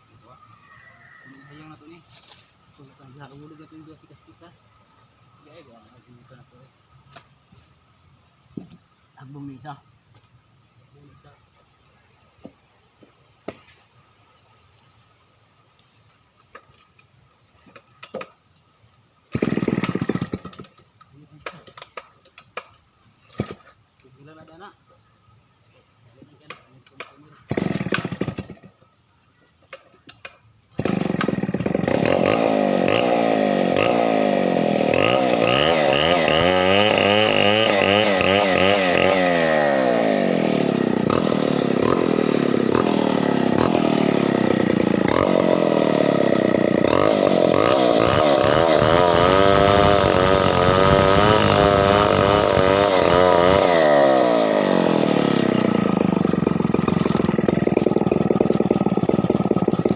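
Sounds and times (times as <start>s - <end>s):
chainsaw revving: 19.3s - 20.8s, 26.5s - 28.8s, 30.7s - 59.9s.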